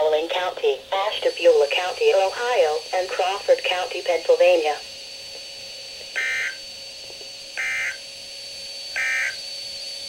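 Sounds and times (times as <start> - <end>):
radio hiss: 0.0 - 5.4, 6.0 - 6.7
faint high whine: 0.0 - 10.0
buzzy digital data tones: 0.9 - 5.2, 6.1 - 6.8, 7.4 - 9.7.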